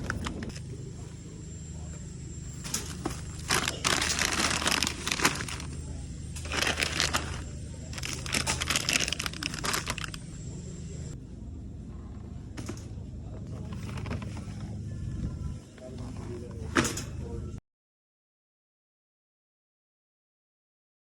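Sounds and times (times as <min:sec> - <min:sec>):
steady low hum: 0:00.0 - 0:17.6
packaging crinkling and rustling: 0:02.8 - 0:05.8, 0:06.4 - 0:10.2.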